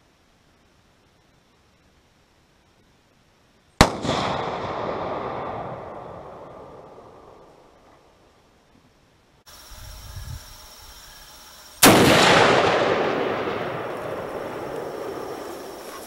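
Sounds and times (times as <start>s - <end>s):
rifle shot echoing: 3.8s - 7.8s, 11.8s - 16.0s.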